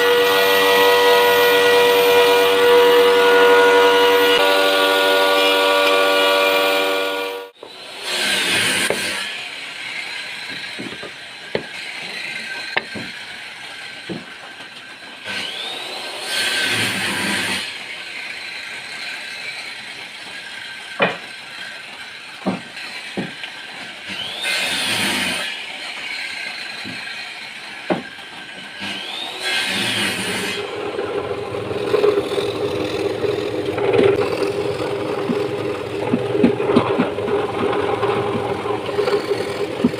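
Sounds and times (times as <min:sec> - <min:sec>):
drum sander droning hum: 0:00.0 - 0:07.8, 0:29.0 - 0:39.9
motor hum: 0:30.6 - 0:39.9.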